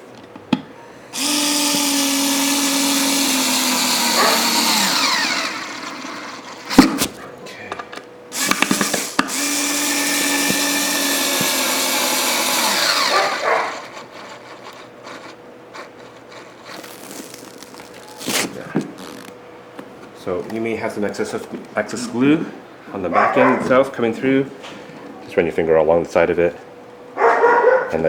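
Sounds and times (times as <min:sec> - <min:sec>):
short drill trigger bursts: 0:01.2 - 0:06.8, 0:08.4 - 0:16.0
cordless drill driving screws: 0:01.2 - 0:06.9, 0:08.4 - 0:18.0.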